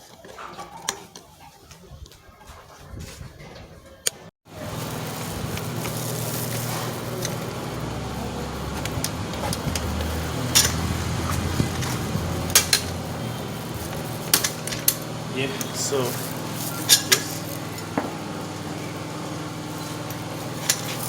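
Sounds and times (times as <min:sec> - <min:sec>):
metal rods clicking: 0:08.8 - 0:13.0.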